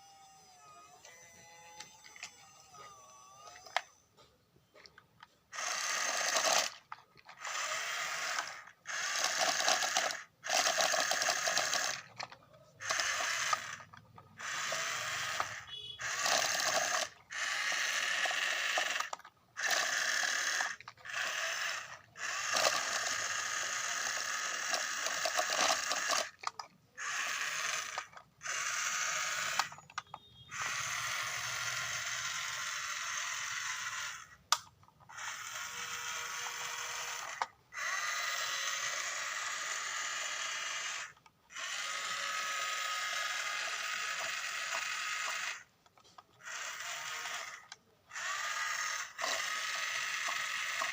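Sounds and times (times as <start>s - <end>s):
toy motors and gears whirring: 0.0s - 50.9s.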